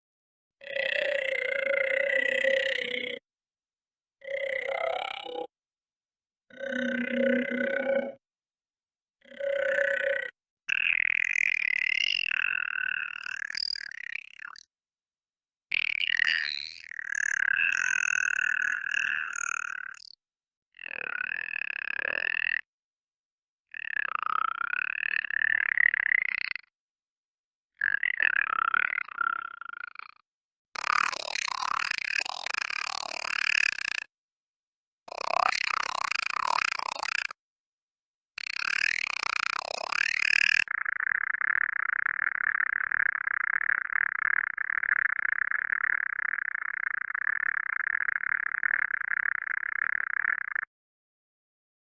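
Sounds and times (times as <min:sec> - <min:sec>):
gravelly alien creature calls: 0:06.5 - 0:08.2.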